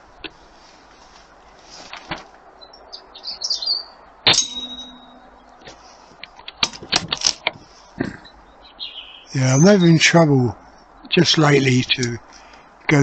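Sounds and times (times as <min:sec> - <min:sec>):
bird chirping: 0:02.6 - 0:06.6, 0:07.6 - 0:12.5
pellet clanging on metal target: 0:04.3 - 0:05.4.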